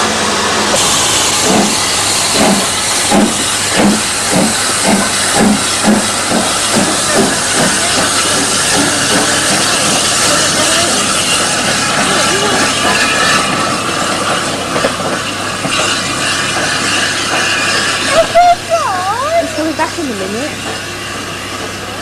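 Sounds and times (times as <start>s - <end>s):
steam hissing: 0.0s - 22.0s
locomotive rhythmic beat: 0.7s - 20.8s.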